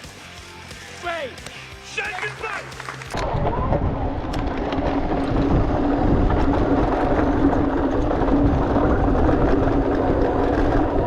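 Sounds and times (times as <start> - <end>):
bike tyres on bumpy dirt trail: 2.2 - 11.0
wind noise: 3.2 - 11.0.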